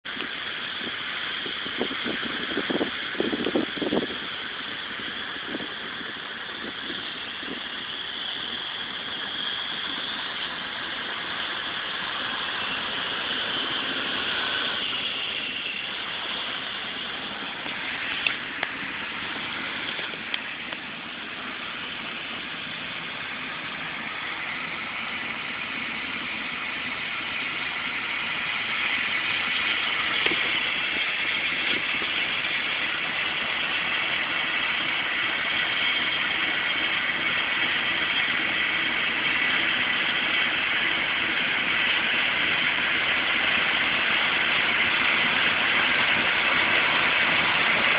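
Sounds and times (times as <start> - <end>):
harvest machinery engine drone: 0.0 - 47.9.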